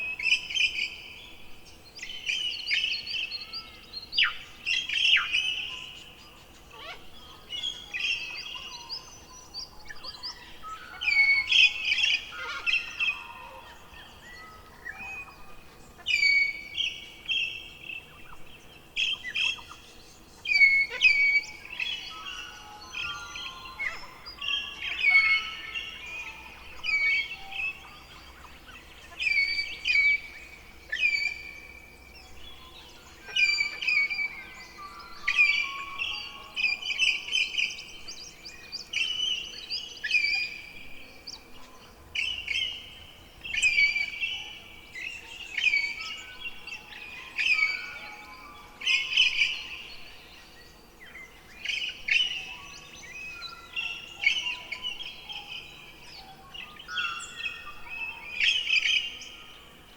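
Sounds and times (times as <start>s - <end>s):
bird chirping: 0.0s - 59.9s.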